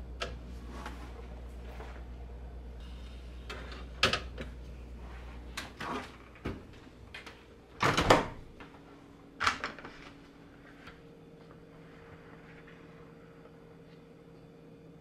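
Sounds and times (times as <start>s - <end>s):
low hum: 0.0s - 7.8s.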